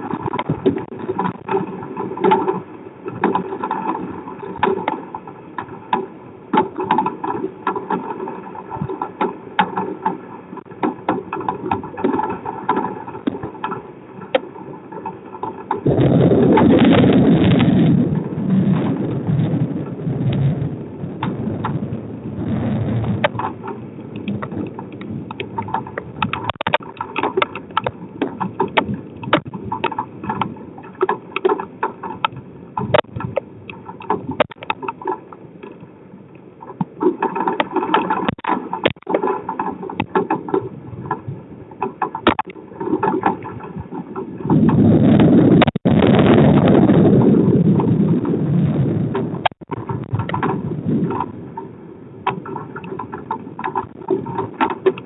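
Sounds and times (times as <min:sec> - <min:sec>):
raindrops ticking on camera: 0:00.0 - 0:55.0
wind and rain noise: 0:00.0 - 0:55.0
thunder rumble: 0:15.4 - 0:30.9, 0:39.9 - 0:55.0.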